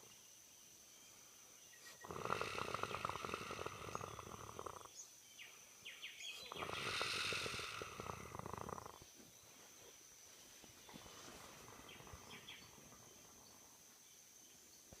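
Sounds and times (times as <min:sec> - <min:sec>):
person snoring: 0:02.0 - 0:04.9, 0:06.5 - 0:09.0.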